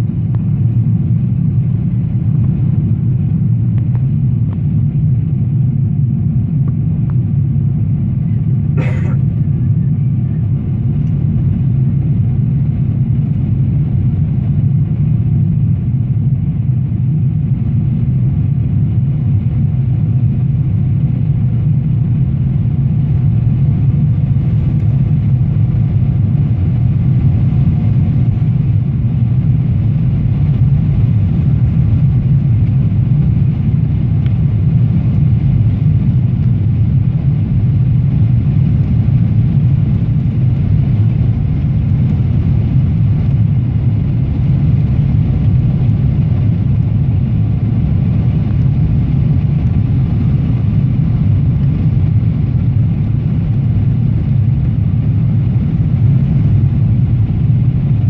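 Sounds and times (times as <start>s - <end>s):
faint steady whine: 0.0s - 58.0s
jet engines droning: 0.0s - 58.0s.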